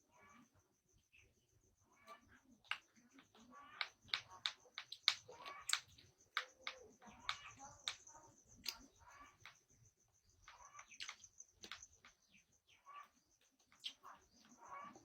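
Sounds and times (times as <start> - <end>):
sharp clicks and taps: 3.8 - 9.6.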